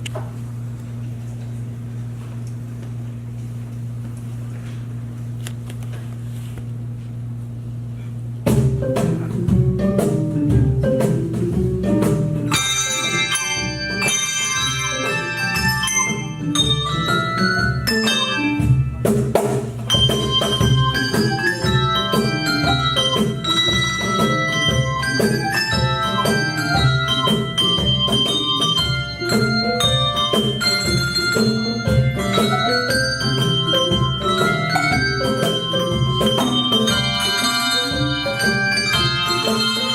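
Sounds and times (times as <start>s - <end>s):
low steady hum: 0.0s - 39.9s
handbell ensemble playing: 8.8s - 39.9s.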